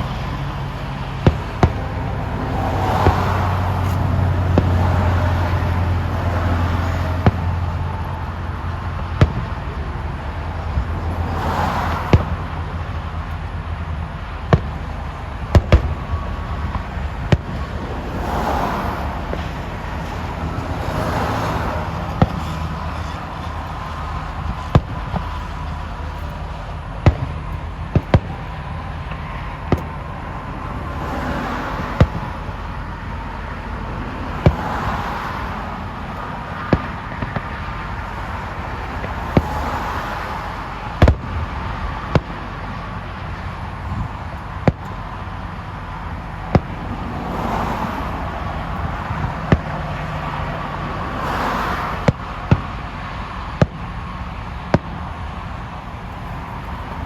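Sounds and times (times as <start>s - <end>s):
fireworks bangs: 0.0s - 32.8s, 34.4s - 37.9s, 38.5s - 42.8s.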